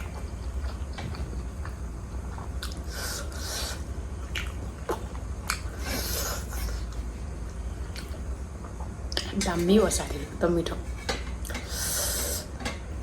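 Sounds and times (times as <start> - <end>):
chewing and wet mouth sounds: 0.0 - 3.4, 4.2 - 7.1, 7.8 - 9.4
steady low hum: 0.0 - 13.0.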